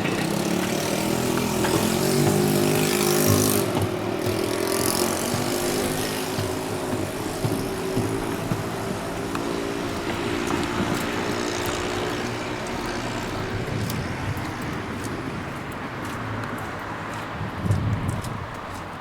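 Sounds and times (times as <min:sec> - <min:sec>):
steady traffic noise: 0:00.0 - 0:19.0
vehicle engine hum: 0:00.0 - 0:19.0.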